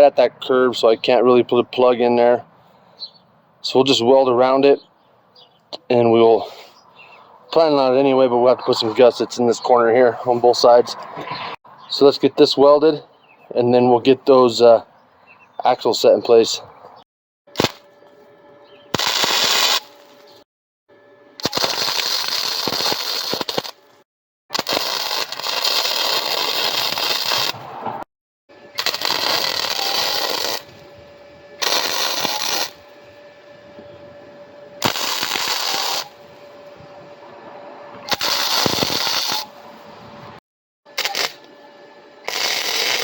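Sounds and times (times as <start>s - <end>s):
steady hum: 0.0s - 11.2s, 17.5s - 27.8s, 28.5s - 43.0s
welding crackle: 17.6s - 17.9s, 18.9s - 20.4s, 21.4s - 27.8s, 28.8s - 30.9s, 31.6s - 33.0s, 34.8s - 36.2s, 38.1s - 39.6s, 41.0s - 41.5s, 42.2s - 43.0s.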